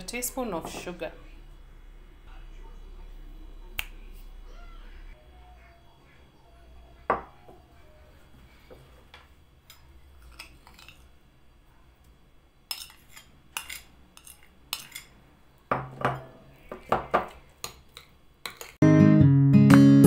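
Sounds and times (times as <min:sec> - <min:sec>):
utensil clinking against bowl: 0:15.7 - 0:18.8.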